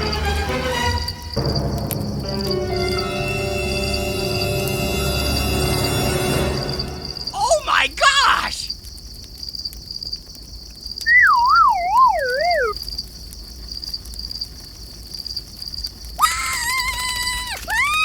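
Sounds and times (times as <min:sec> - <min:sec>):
crickets chirping: 0:00.0 - 0:18.0
warbling whistle-like tone: 0:11.1 - 0:12.8.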